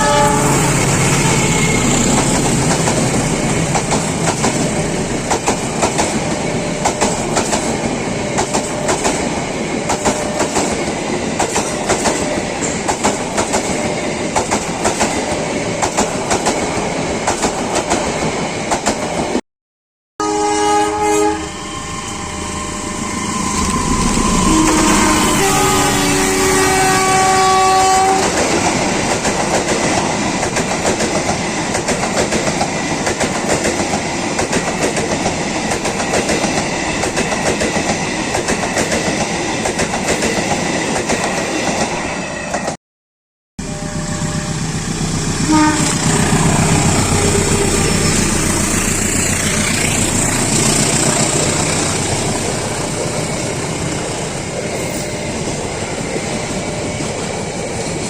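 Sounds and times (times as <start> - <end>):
train horn: 0.0 - 2.2, 20.2 - 28.4, 45.4 - 48.3
train wheels rattling on rails: 0.0 - 19.4, 22.0 - 42.8, 44.0 - 58.0.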